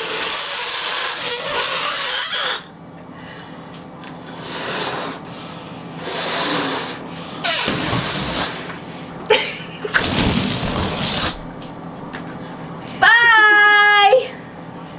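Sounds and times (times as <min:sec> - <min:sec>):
balloon squeals: 0:00.0 - 0:02.7, 0:06.2 - 0:08.6, 0:10.0 - 0:11.6
rubber balloons squeaking: 0:00.0 - 0:02.7, 0:06.0 - 0:08.6, 0:09.9 - 0:12.1.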